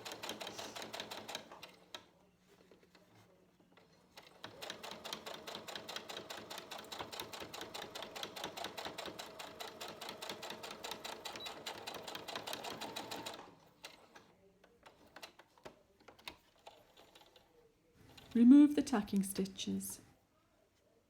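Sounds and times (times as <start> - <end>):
sewing machine stitching: 0.0 - 2.0, 3.9 - 14.3, 14.9 - 17.5.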